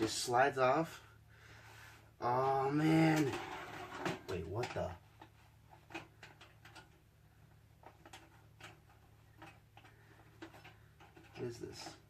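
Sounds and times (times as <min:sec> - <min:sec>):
low steady hum: 0:00.0 - 0:12.0
faint clicks and taps: 0:04.6 - 0:12.0.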